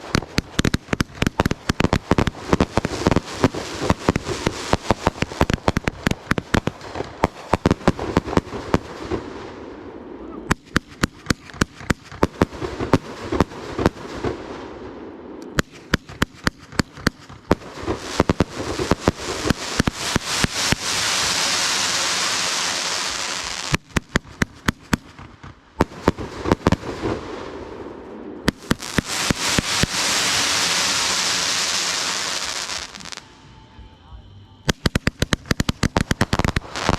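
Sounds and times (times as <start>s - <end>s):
fireworks popping and crackling: 0.0s - 9.6s, 10.4s - 14.7s, 15.4s - 33.2s, 34.6s - 36.9s
loud steady hiss: 17.3s - 23.9s, 26.1s - 36.9s.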